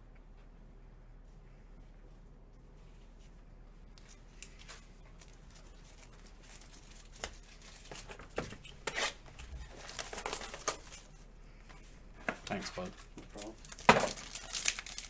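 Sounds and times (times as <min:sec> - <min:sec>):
light clicks and scrapes: 0:01.9 - 0:15.0
cards and packaging rustling: 0:03.9 - 0:15.0.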